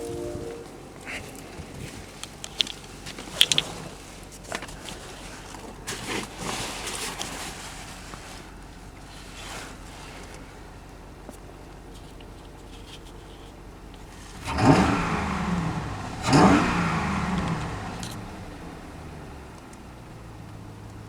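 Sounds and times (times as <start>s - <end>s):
soft rustling and shuffling: 0.5s - 14.4s.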